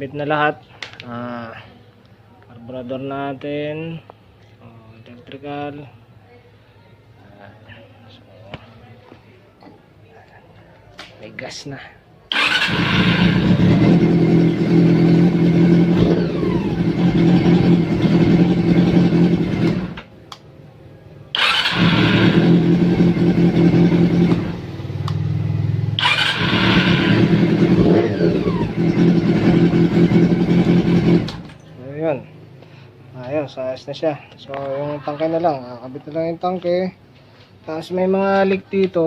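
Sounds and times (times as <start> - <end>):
motorcycle engine running: 12.3 - 20.0, 21.4 - 31.6.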